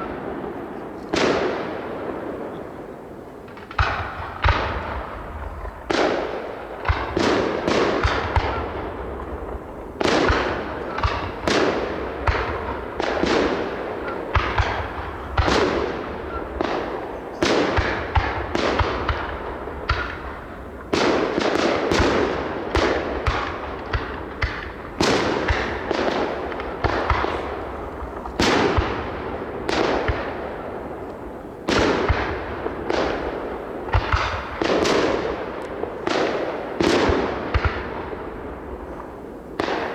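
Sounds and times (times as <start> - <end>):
fireworks bursting with crackle: 3.4 - 39.9.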